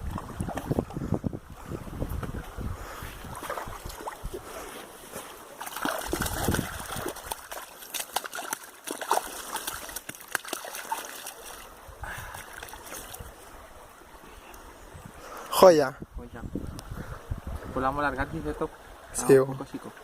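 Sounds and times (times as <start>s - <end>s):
water splashing and trickling: 0.0s - 15.9s.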